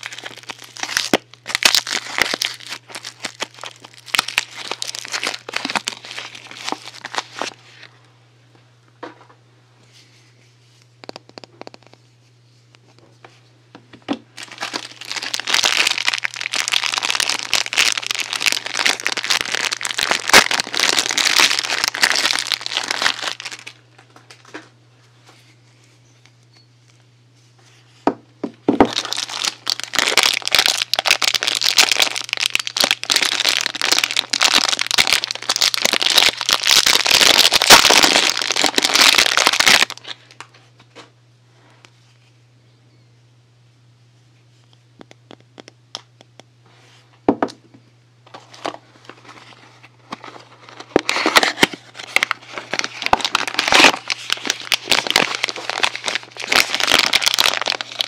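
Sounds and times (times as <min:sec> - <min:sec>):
crinkly wrapping crumpled: 0:00.0 - 0:07.9, 0:14.3 - 0:26.0, 0:28.8 - 0:40.6, 0:48.3 - 0:58.0.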